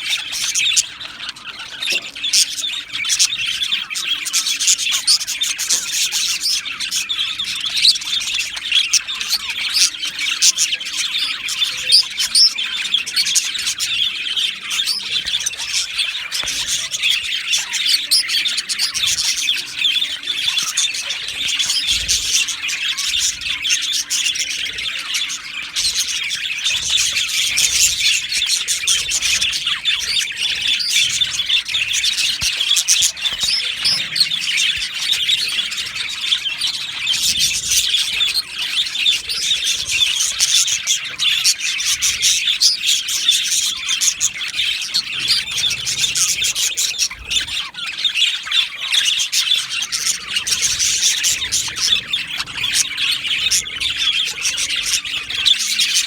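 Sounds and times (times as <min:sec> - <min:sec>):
bird squawk: 0:00.0 - 0:56.0
budgerigars chirping and chattering: 0:00.0 - 0:56.0.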